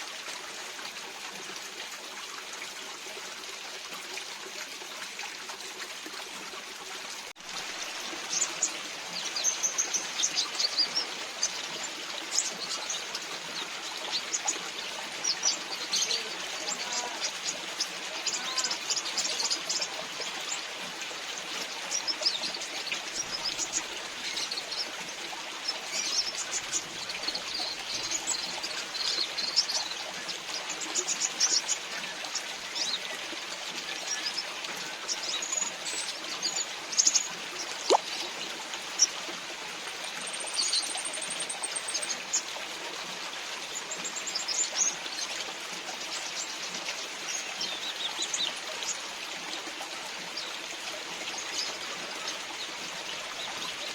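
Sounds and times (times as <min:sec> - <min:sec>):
rain falling and dripping: 0:00.0 - 0:53.9
small birds chirping: 0:07.6 - 0:42.5, 0:43.6 - 0:49.1.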